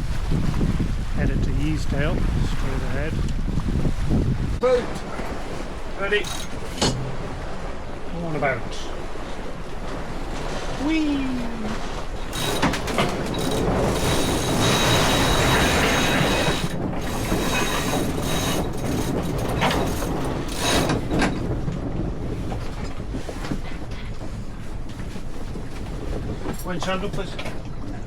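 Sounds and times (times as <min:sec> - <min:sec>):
wind and water rushing: 0:00.0 - 0:28.0
winch ratchet clicking: 0:12.3 - 0:19.3.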